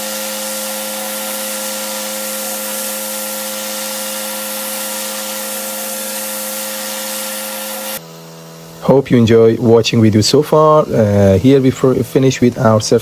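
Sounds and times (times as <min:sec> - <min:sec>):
high-pressure water spray hissing: 0:00.0 - 0:08.0
pressure washer machine hum: 0:00.0 - 0:13.0.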